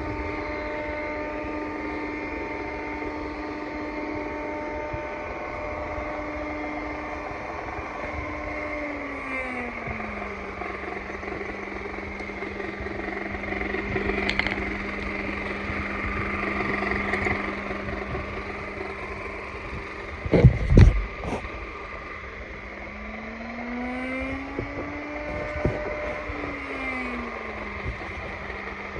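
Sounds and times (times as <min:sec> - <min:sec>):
vacuum cleaner motor running: 0:00.0 - 0:28.9
loud knocks: 0:20.2 - 0:21.7, 0:24.3 - 0:26.5.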